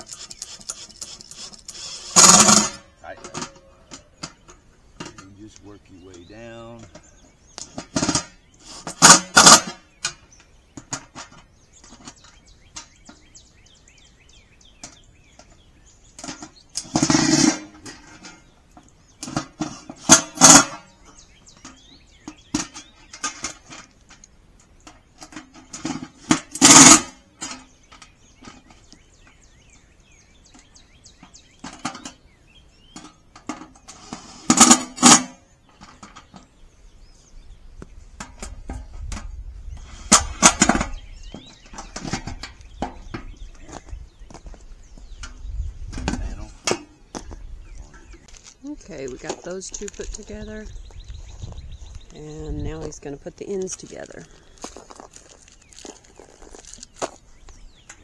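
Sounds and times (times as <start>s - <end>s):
cordless drill driving screws: 0.0s - 2.7s.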